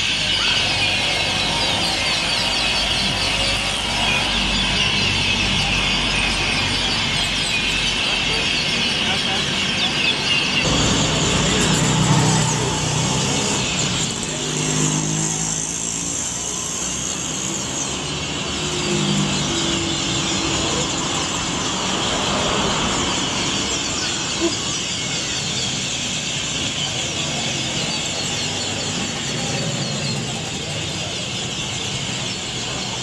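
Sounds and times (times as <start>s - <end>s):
flock of birds chattering: 0.0s - 33.0s
street traffic: 0.0s - 33.0s
vehicle engine passing: 10.6s - 23.6s.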